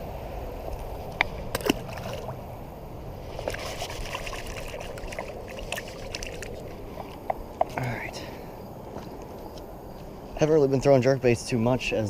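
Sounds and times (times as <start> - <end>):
river water trickling: 0.3 - 9.3
small splashes: 1.5 - 2.4, 3.3 - 7.2.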